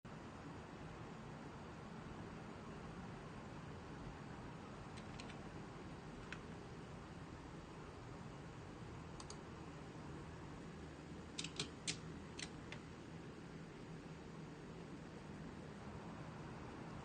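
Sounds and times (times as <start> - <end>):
faint electrical buzz: 0.1 - 17.0
sharp clicks: 9.2 - 9.4, 11.4 - 12.8.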